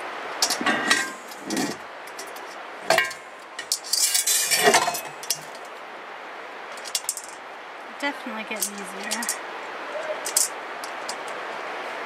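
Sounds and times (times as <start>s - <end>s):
metal parts clinking and knocking: 6.7s - 7.4s, 8.6s - 9.4s, 10.2s - 11.4s.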